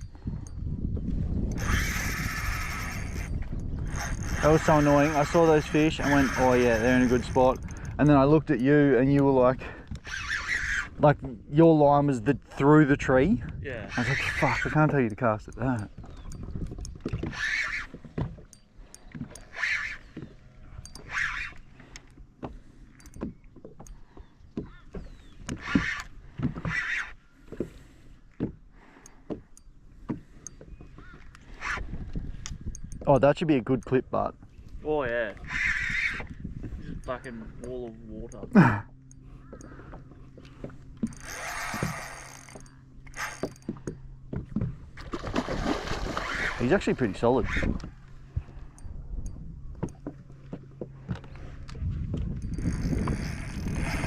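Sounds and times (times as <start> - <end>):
fishing reel whirring and clicking: 0.0 - 11.0, 13.9 - 22.2, 24.7 - 27.2, 30.4 - 33.1, 35.4 - 38.4, 39.0 - 44.2, 45.8 - 50.0, 51.2 - 54.0
water splashing against boat: 1.3 - 11.8, 13.9 - 54.0
gear and hull knocks: 39.5 - 45.8.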